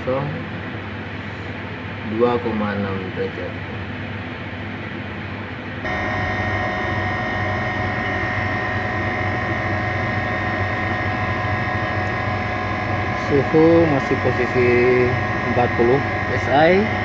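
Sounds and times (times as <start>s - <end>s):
refrigeration compressor humming: 5.6s - 17.0s
steady whining tones: 5.8s - 17.0s.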